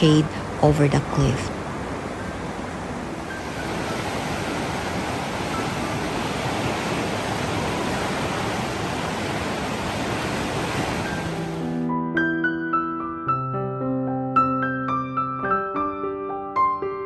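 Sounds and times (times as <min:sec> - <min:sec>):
waterfall roaring: 0:00.0 - 0:11.8.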